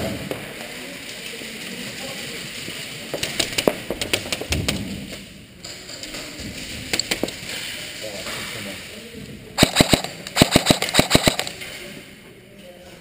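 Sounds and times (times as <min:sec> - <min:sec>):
airsoft gunfire cracks: 0:09.6 - 0:11.6.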